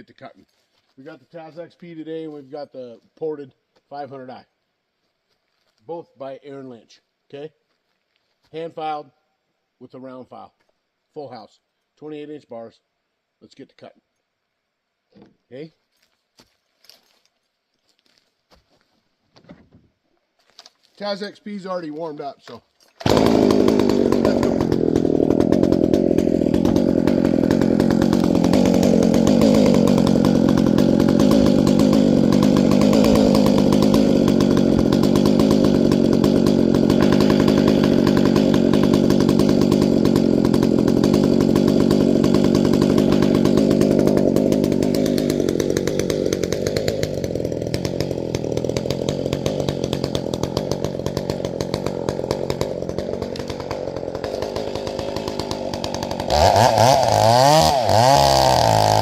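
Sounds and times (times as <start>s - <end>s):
chainsaw cutting wood: 22.8s - 59.0s.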